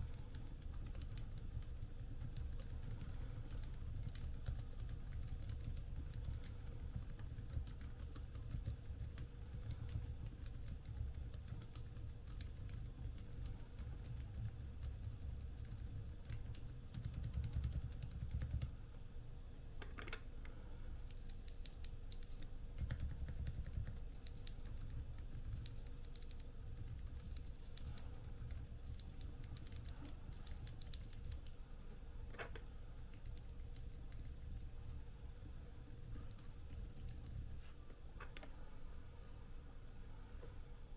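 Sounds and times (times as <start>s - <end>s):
mechanical keyboard typing: 0.0s - 18.7s, 20.9s - 31.5s.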